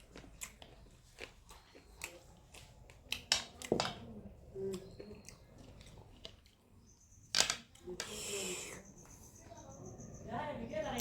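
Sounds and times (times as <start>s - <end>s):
wet chewing and lip smacks: 0.0s - 3.7s.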